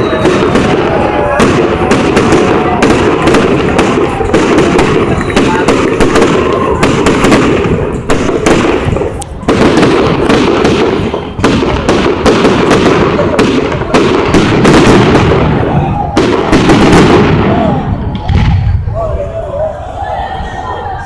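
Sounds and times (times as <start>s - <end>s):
fireworks bangs and crackles: 0.0s - 19.2s.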